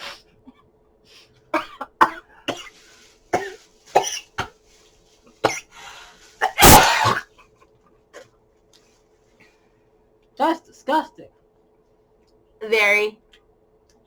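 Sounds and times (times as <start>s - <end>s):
person coughing: 1.6s - 2.8s, 3.4s - 4.5s, 6.4s - 8.4s.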